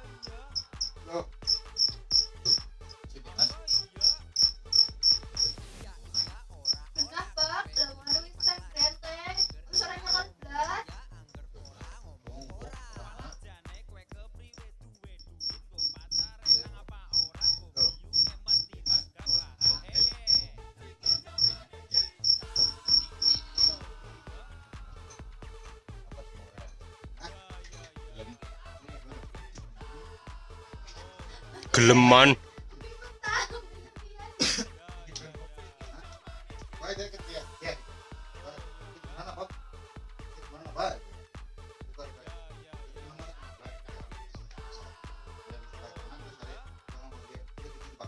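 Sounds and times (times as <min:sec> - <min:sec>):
faint background music: 0:00.0 - 0:48.0
insect chirping: 0:00.5 - 0:02.6, 0:03.4 - 0:05.6, 0:06.2 - 0:10.3, 0:15.2 - 0:23.8.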